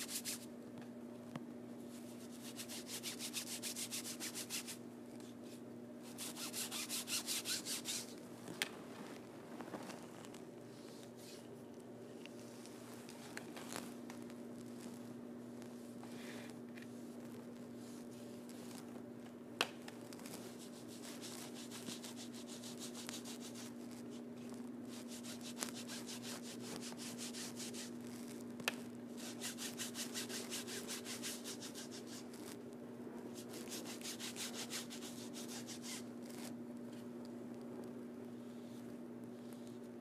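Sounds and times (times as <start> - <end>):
paintbrush scrubbing on backdrop: 0.0 - 0.5, 1.9 - 4.8, 5.5 - 8.2, 20.2 - 28.4, 29.2 - 32.6, 33.3 - 36.5
steady low hum: 0.0 - 40.0.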